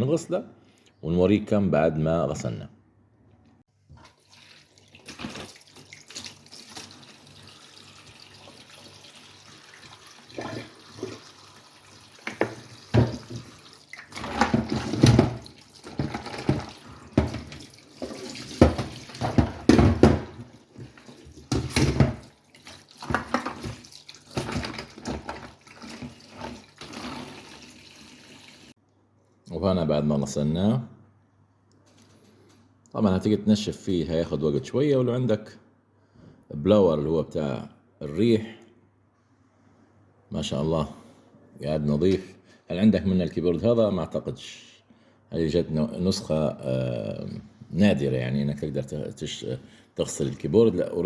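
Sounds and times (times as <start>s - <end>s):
tap water running into sink: 4.0s - 28.7s
water splashing: 4.0s - 28.7s.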